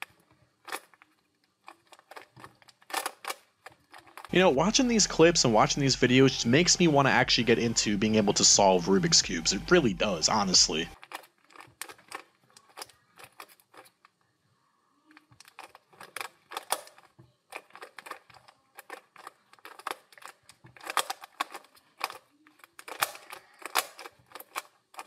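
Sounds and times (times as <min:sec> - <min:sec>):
plastic puzzle cube clicking: 0:00.0 - 0:04.3, 0:11.0 - 0:14.2, 0:15.1 - 0:25.0.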